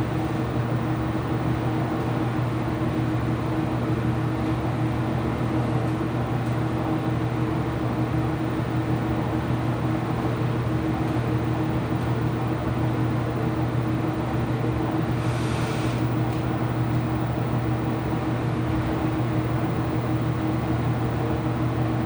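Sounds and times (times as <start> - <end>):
washing machine humming: 0.0 - 22.0.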